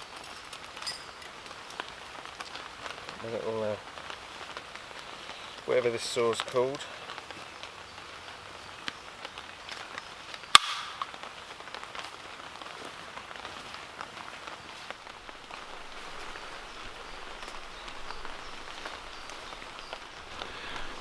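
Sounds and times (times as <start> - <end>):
raindrops pattering in woods: 0.0 - 21.0
sharp crack: 10.5 - 11.3.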